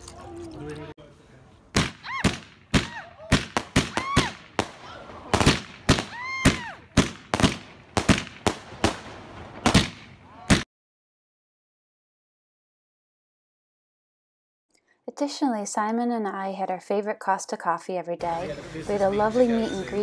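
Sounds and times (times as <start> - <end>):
fireworks banging: 1.7 - 10.6
whistling fireworks: 2.2 - 10.6.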